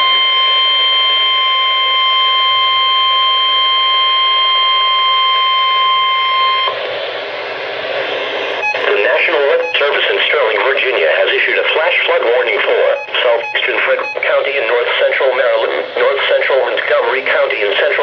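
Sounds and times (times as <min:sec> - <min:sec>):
high steady alarm tone: 0:00.0 - 0:07.1, 0:08.0 - 0:18.0
radio hiss: 0:06.7 - 0:18.0.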